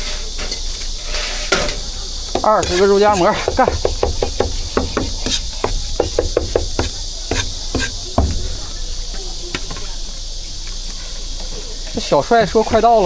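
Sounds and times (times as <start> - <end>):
steady hiss: 0.0 - 13.0
cleaver chopping on wooden board: 2.4 - 8.7.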